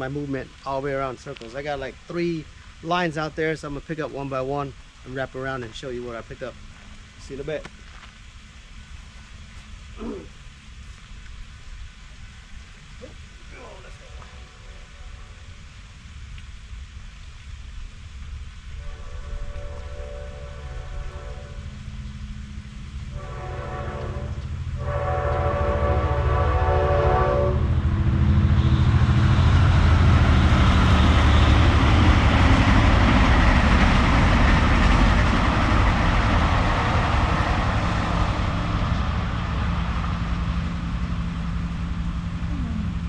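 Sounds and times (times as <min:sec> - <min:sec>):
train passing rumble and rattle: 0:00.0 - 0:43.0
train horn blasts: 0:14.0 - 0:15.6, 0:18.8 - 0:21.8, 0:23.1 - 0:29.6.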